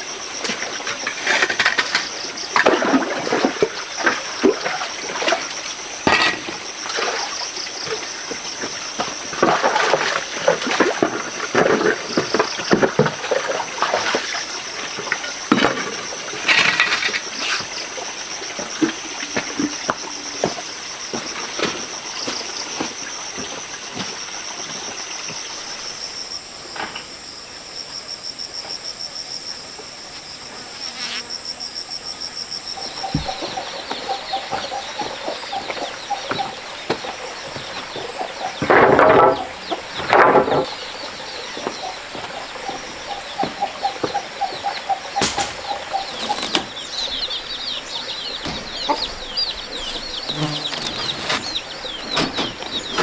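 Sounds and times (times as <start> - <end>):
insects trilling: 0.0 - 53.0
birds chirping: 32.8 - 53.0
loud bird calls: 32.8 - 53.0.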